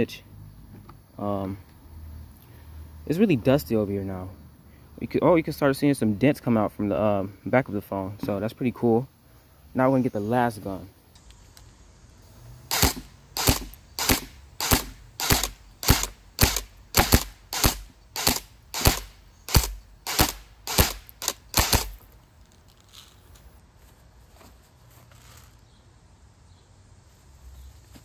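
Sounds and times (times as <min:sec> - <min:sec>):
airsoft rifle single shots: 0:12.7 - 0:22.0.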